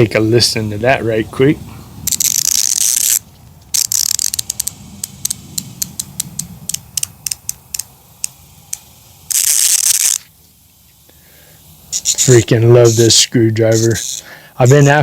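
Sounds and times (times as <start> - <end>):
screwdriver ratchet clicking: 3.8 - 8.3.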